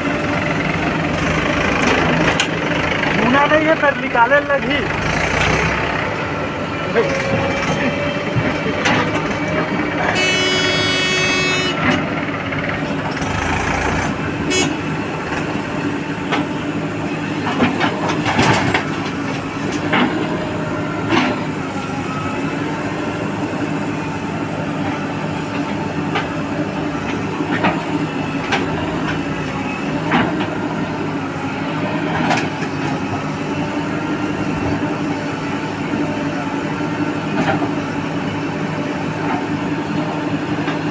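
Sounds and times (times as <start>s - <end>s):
heavy vehicle engine running: 0.0s - 40.9s
vehicle horn honk: 10.0s - 12.0s, 14.4s - 15.0s
knocks and clanks: 11.7s - 21.5s.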